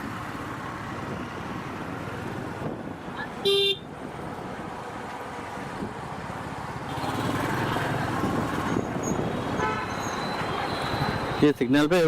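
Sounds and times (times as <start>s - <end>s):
motorcycle engine and road noise: 0.0s - 12.0s
vehicle horn toot: 3.4s - 3.8s, 9.6s - 11.1s.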